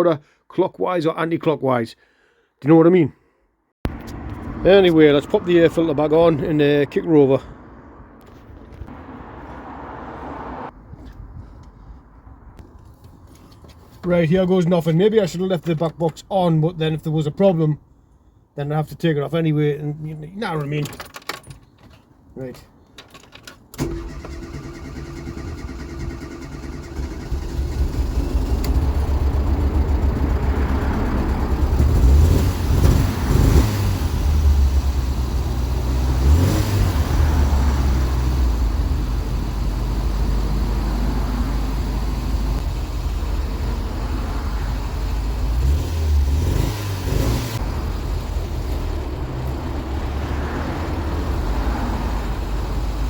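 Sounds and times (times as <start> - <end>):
car engine starting and revving: 23.8 - 53.0.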